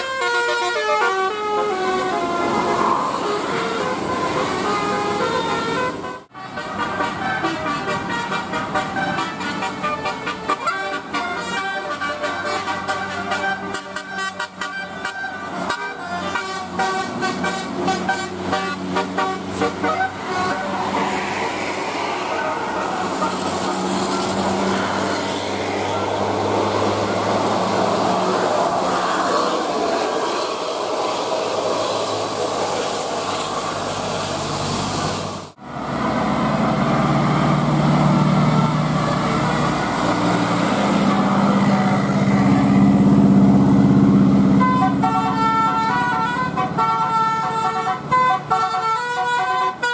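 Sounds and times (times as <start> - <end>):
bus musical horn: 0.0 - 21.3, 22.0 - 30.8, 37.3 - 49.9
steady rushing noise: 19.0 - 37.9.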